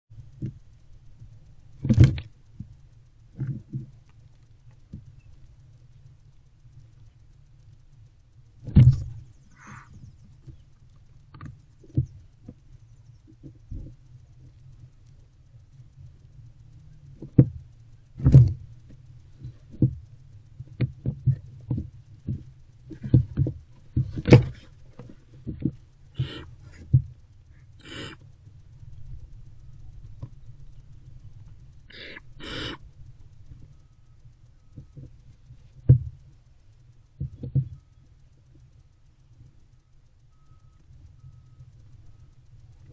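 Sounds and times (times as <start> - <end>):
steady low hum: 0.1 - 42.9
owlets hissing: 26.1 - 26.9, 27.5 - 28.4, 30.4 - 33.9.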